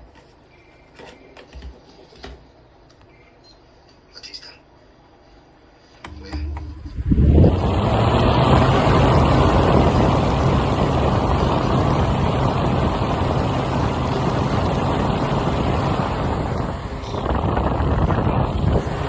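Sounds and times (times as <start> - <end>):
mechanical running noise with hum: 6.0 - 19.0.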